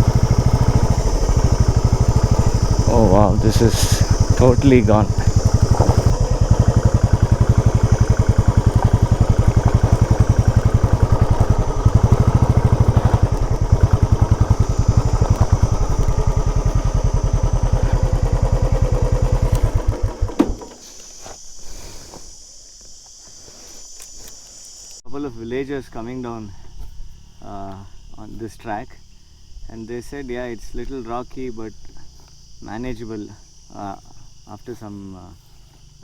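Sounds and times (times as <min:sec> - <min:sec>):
motorcycle engine running: 0:00.0 - 0:20.8
crickets chirring: 0:00.0 - 0:36.0.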